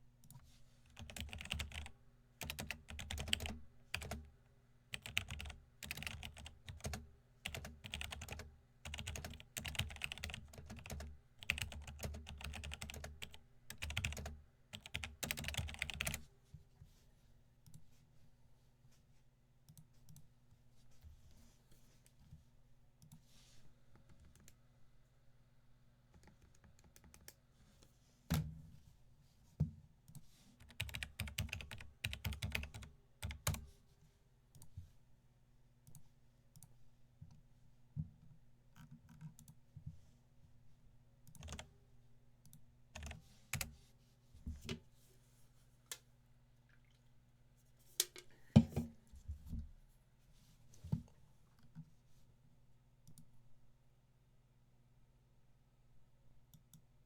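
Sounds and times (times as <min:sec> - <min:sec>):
faint electrical hum: 0:00.0 - 0:57.0
typing on computer keyboard: 0:00.9 - 0:04.2, 0:04.9 - 0:16.2, 0:30.6 - 0:33.6, 0:41.3 - 0:41.7, 0:42.5 - 0:43.7.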